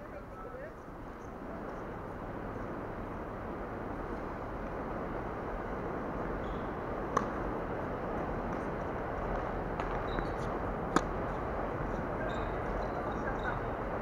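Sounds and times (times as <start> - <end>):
steady background noise: 0.0 - 14.0
tennis ball pops: 7.1 - 7.4, 10.9 - 11.1.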